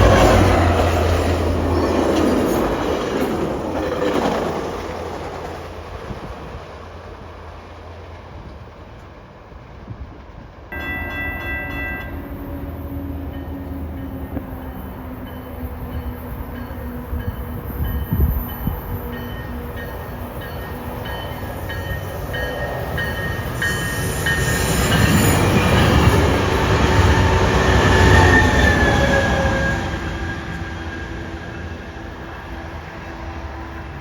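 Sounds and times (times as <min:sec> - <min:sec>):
train passing: 0:00.0 - 0:34.0
train wheels squealing: 0:10.8 - 0:34.0.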